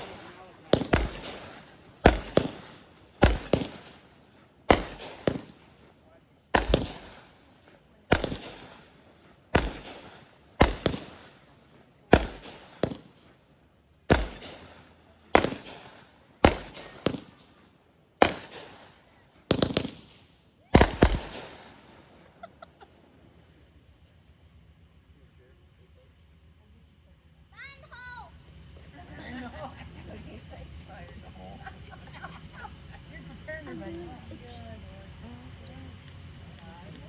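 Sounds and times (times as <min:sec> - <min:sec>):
fireworks bangs echoing: 0:00.0 - 0:13.4, 0:14.0 - 0:22.5
faint fireworks crackles: 0:00.0 - 0:37.0.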